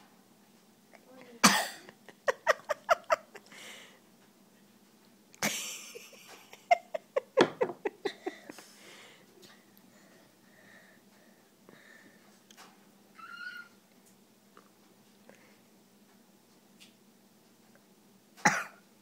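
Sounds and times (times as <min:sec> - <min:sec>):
child coughing: 0:01.4 - 0:02.0, 0:18.4 - 0:18.8.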